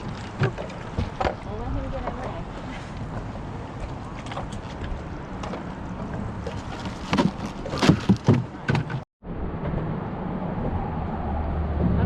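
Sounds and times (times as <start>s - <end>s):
sharp knocks and clatters: 5.4s - 9.8s.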